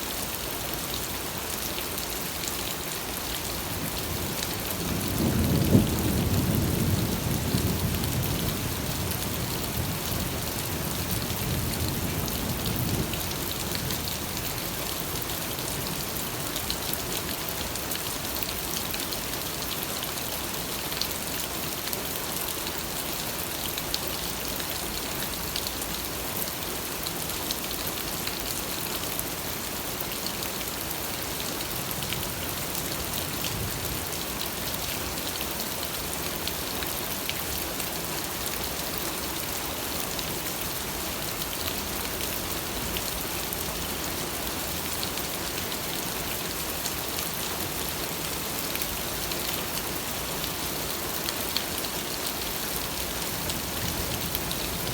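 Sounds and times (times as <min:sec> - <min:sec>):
steady rain: 0:00.0 - 0:54.9.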